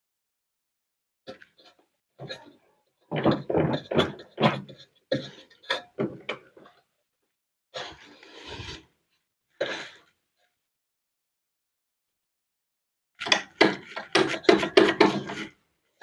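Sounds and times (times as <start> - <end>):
scraping rub: 7.8 - 9.0.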